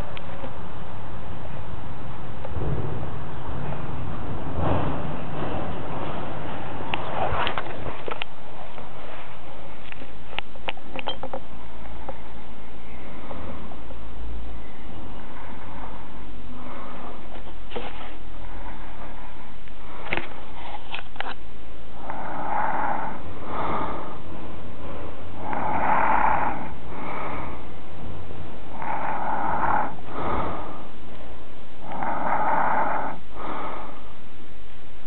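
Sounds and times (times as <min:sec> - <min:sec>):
person snoring: 0:22.0 - 0:24.3, 0:25.4 - 0:27.7, 0:28.6 - 0:31.0, 0:31.8 - 0:34.2.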